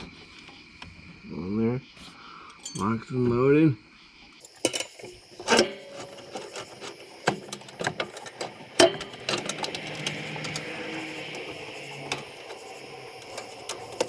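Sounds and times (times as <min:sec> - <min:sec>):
tools clicking and knocking on metal: 0:04.4 - 0:14.0.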